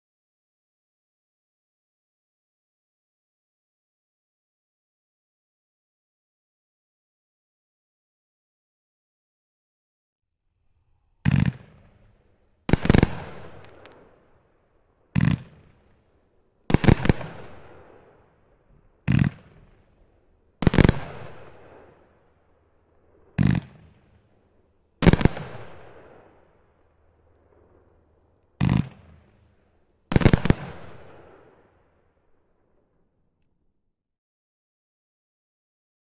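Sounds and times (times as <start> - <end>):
fireworks booming: 10.9 - 32.4.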